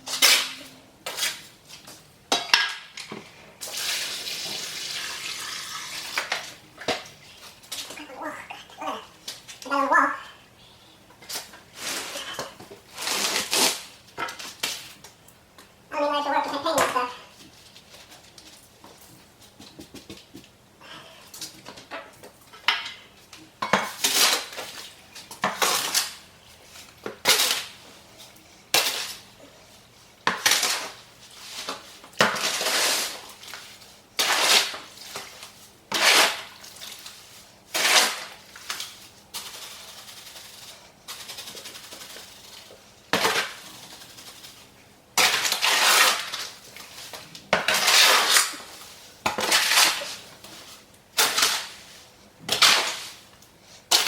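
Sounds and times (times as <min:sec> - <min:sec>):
tool scraping mortar in container: 0:30.3 - 0:33.2, 0:34.2 - 0:34.9, 0:35.9 - 0:36.6, 0:37.7 - 0:38.3, 0:45.2 - 0:46.6, 0:47.5 - 0:48.7, 0:49.3 - 0:50.3.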